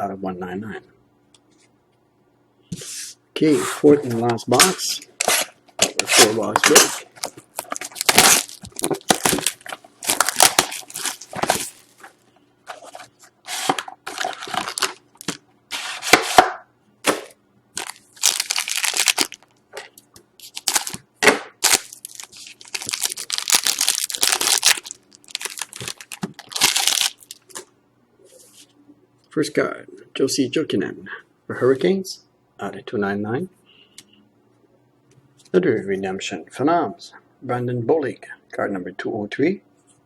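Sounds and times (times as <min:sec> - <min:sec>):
plastic wrap tearing and crinkling: 0:05.2 - 0:12.2, 0:13.5 - 0:15.4, 0:17.8 - 0:19.5, 0:20.4 - 0:27.7.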